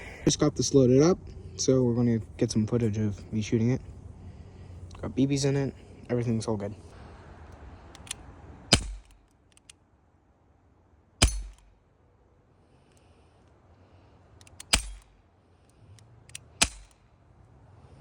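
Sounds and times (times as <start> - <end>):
bb pistol shots: 8.7 - 9.3, 11.2 - 11.8, 14.6 - 15.2, 16.4 - 17.0.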